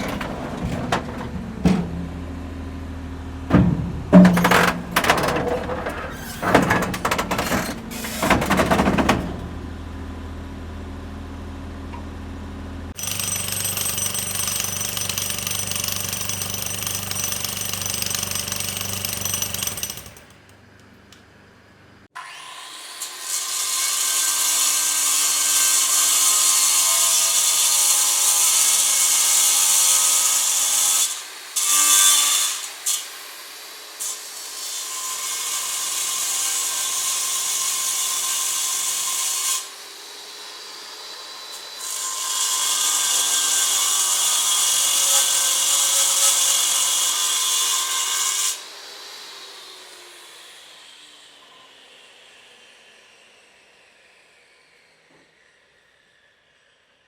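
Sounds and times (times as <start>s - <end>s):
sharp knocks: 3.5s - 5.7s
loud high-pitched grinding: 4.1s - 9.4s, 13.0s - 20.3s.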